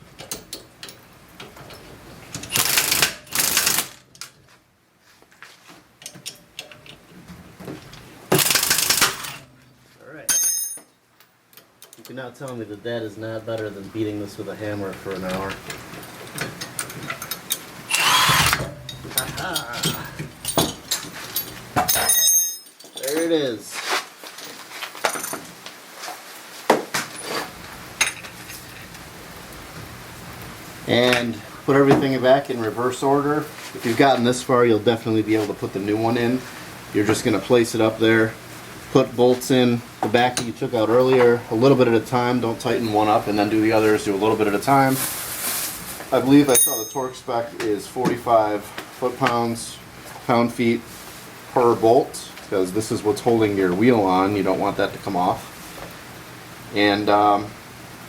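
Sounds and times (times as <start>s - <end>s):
impact wrench hammering: 8.3s - 9.5s
metal tools clinking: 10.3s - 12.1s, 15.1s - 23.5s, 46.3s - 47.4s.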